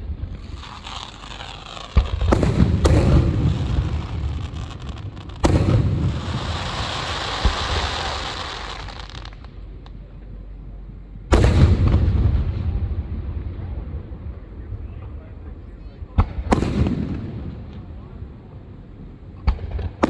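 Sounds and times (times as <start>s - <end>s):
crackling hiss: 0.0s - 10.2s
firework boom: 0.3s - 9.6s, 11.3s - 13.9s.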